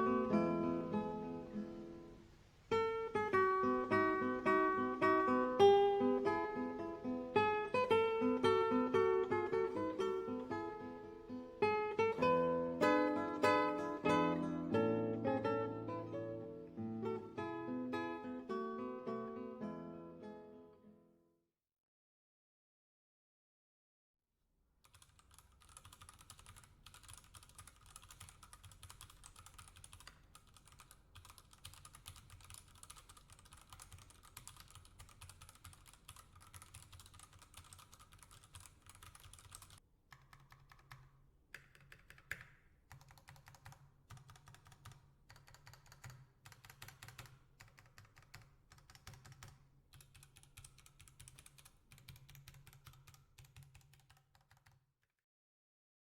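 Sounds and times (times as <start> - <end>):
mechanical keyboard typing: 24.8 - 54.8.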